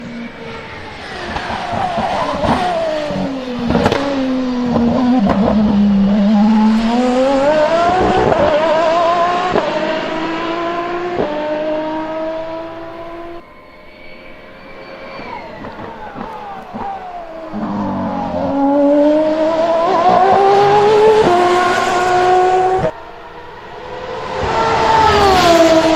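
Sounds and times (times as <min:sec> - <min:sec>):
exhaust cracks: 0:00.0 - 0:13.4, 0:15.2 - 0:23.0
car engine revving and accelerating: 0:00.0 - 0:25.9.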